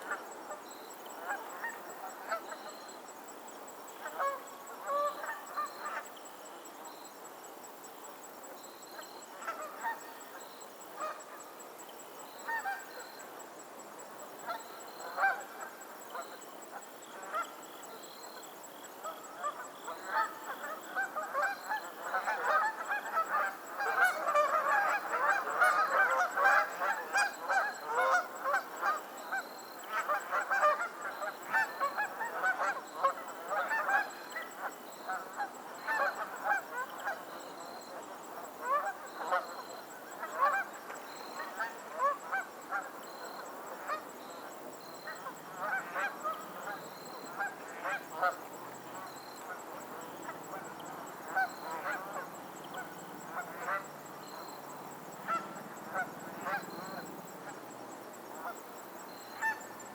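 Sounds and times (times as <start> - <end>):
geese honking: 19.4 - 29.0, 59.4 - 59.6.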